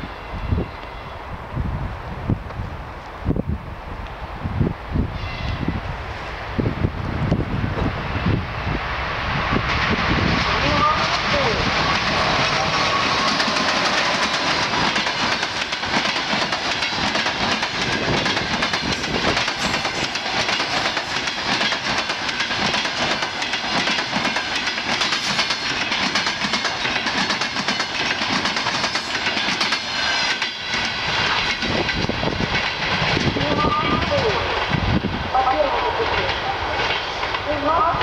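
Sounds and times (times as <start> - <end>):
train wheels clattering over rails: 9.6 - 35.0.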